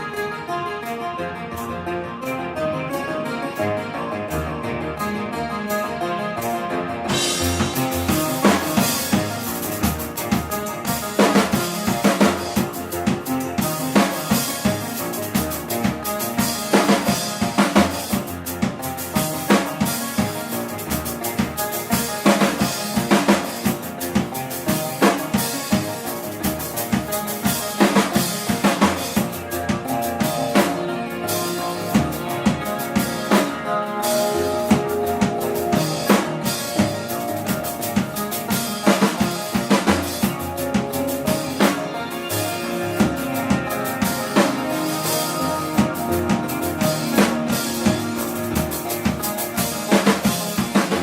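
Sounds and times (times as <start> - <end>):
live band playing: 0.0 - 51.0.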